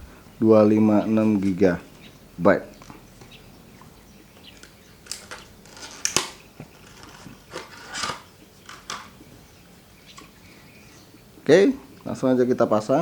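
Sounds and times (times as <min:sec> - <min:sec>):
packaging crackling and clicking: 0:04.5 - 0:09.2.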